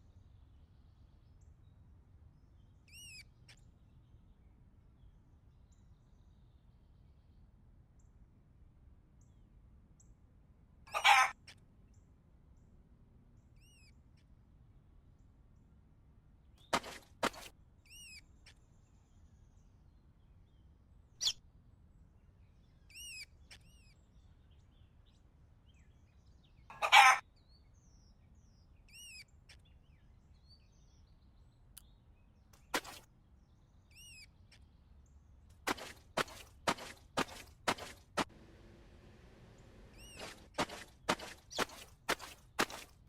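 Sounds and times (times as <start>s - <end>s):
bird chirping: 2.6s - 4.1s, 22.6s - 38.3s, 39.4s - 42.9s.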